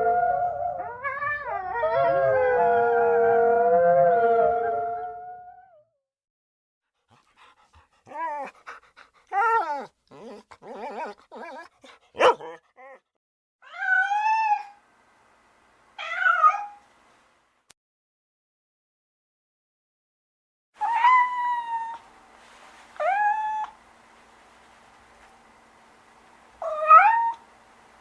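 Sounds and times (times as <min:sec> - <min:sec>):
dog whining: 0:08.0 - 0:08.7, 0:09.3 - 0:13.0
dog yelping: 0:09.3 - 0:13.0.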